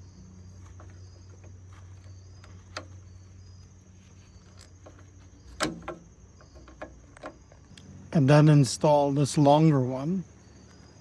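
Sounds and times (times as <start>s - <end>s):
crickets chirping: 0.0s - 11.0s.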